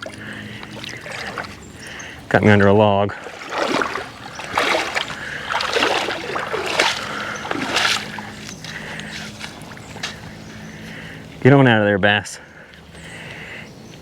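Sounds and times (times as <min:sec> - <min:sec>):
water splashing and sloshing: 0:00.0 - 0:10.9.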